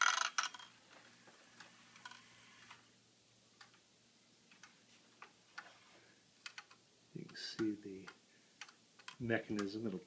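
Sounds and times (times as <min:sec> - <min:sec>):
clock ticking faintly: 0:03.6 - 0:03.8.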